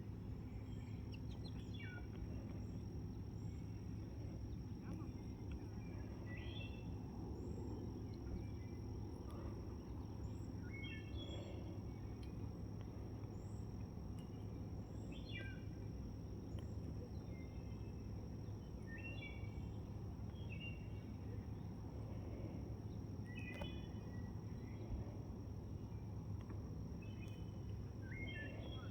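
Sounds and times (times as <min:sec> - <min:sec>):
steady low rumble: 0:00.0 - 0:28.9
birds chirping: 0:00.4 - 0:15.7.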